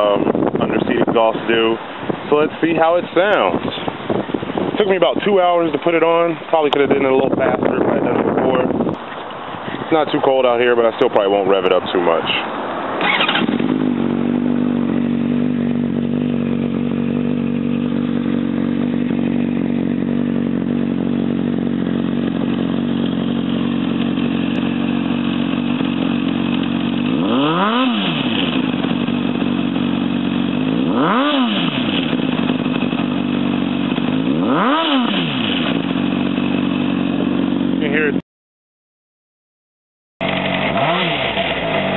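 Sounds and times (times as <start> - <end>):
motorcycle engine revving: 11.4 - 38.2, 40.2 - 41.9
motorcycle engine idling: 13.0 - 38.2, 40.2 - 41.9.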